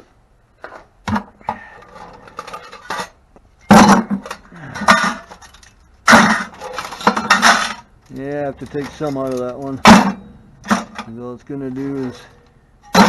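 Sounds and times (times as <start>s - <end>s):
metal scrap clattering in a bucket: 0.6s - 13.0s.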